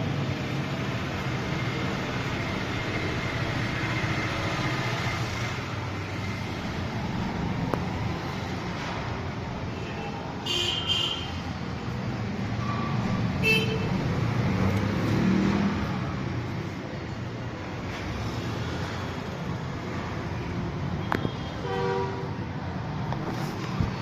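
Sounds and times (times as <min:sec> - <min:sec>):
road traffic noise: 0:00.0 - 0:24.0.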